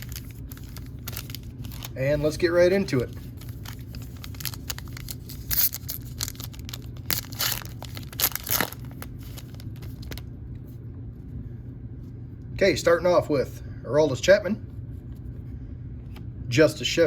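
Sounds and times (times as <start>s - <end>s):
foil wrapper tearing and crinkling: 0.0s - 10.3s.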